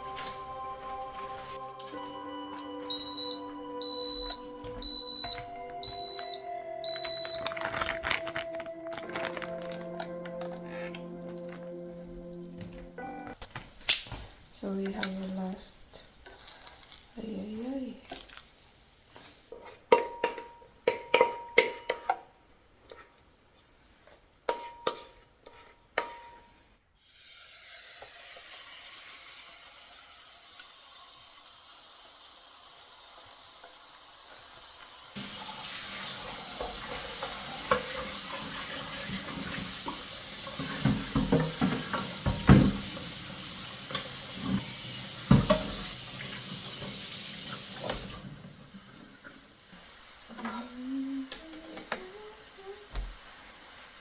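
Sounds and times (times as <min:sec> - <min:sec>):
utensils clinking against dishes: 0:00.0 - 0:11.6, 0:43.8 - 0:46.0.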